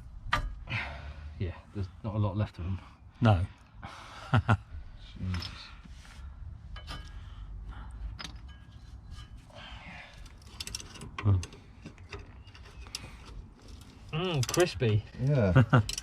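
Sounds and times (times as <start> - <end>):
metal tools clinking and rattling: 5.2 - 5.7, 6.7 - 7.3, 8.1 - 16.0.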